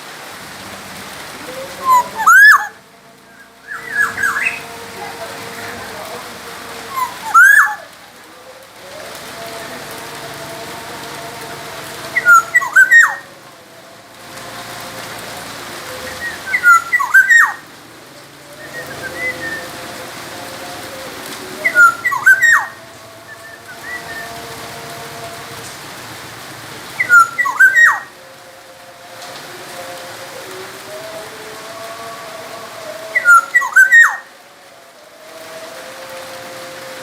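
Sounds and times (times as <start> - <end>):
background hiss: 0.0 - 37.0
bird whistling fluty notes: 1.8 - 2.8, 3.4 - 4.7, 6.9 - 7.8, 12.2 - 13.2, 16.1 - 17.6, 18.6 - 19.7, 21.6 - 24.4, 27.0 - 28.1, 33.2 - 34.2.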